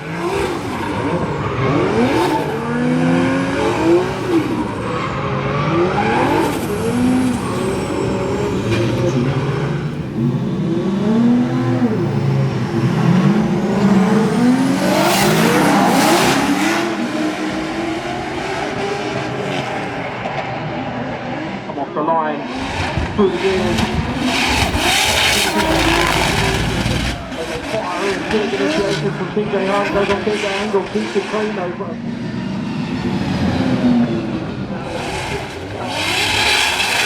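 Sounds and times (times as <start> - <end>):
car engine revving hard: 0.0 - 37.0
tyre noise: 22.6 - 28.9.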